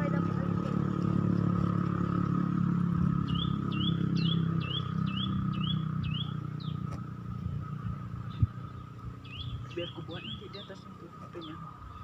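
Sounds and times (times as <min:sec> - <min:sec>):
low engine hum: 0:00.0 - 0:12.0
small bird chirping: 0:03.2 - 0:07.0, 0:07.8 - 0:12.0.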